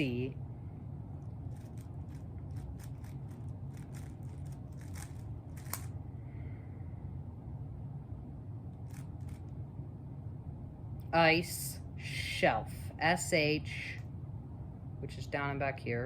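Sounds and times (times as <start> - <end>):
plastic cube layers clicking: 3.9 - 5.9.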